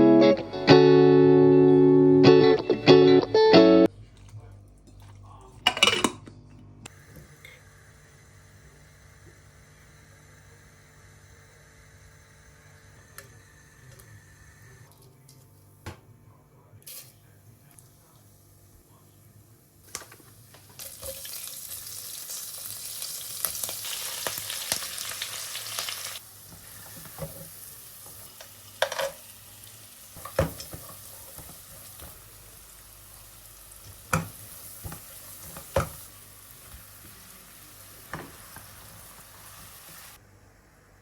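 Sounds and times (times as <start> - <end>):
food sizzling in hot oil: 20.7 - 40.2.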